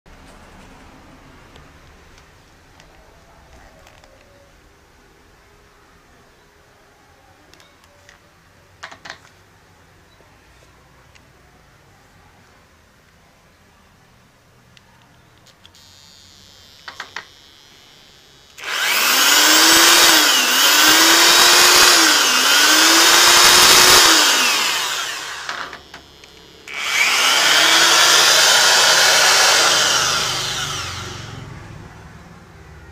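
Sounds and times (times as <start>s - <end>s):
power drill buzzing: 15.7s - 31.6s.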